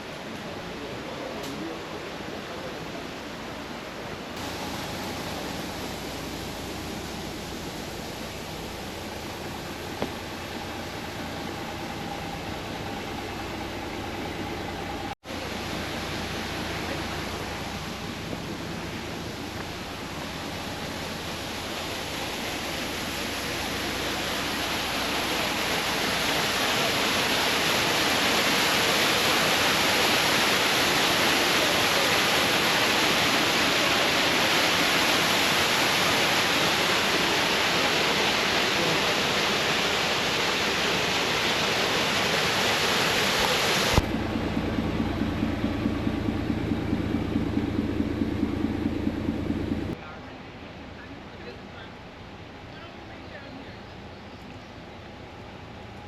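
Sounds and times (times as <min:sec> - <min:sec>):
rushing water: 0:00.0 - 0:50.8
low hum: 0:04.4 - 0:30.8, 0:37.0 - 0:50.0.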